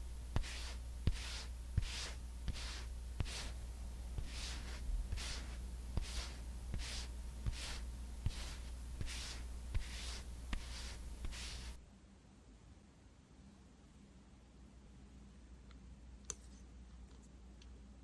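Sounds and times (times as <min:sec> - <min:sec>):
low steady hum: 0:00.0 - 0:18.0
soft swishing strokes: 0:00.4 - 0:11.8.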